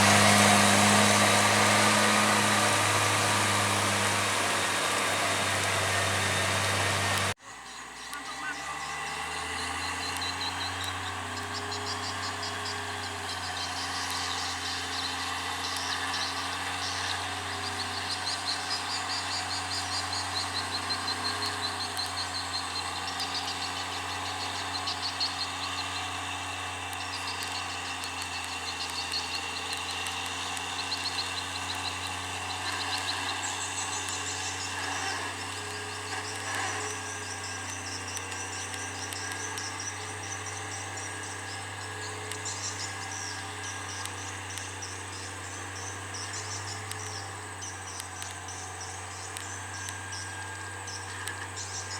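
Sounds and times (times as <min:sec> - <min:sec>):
insects chirping in trills: 0:07.5 - 0:51.9.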